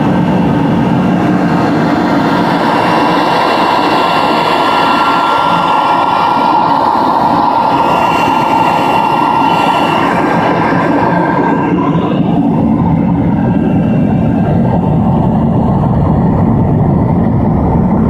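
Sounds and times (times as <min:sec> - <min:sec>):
vacuum cleaner motor whine: 0:00.8 - 0:13.6.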